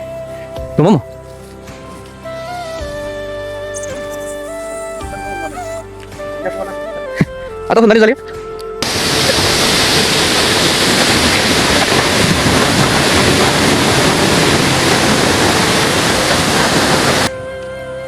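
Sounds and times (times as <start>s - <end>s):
waterfall rushing: 8.8s - 17.3s.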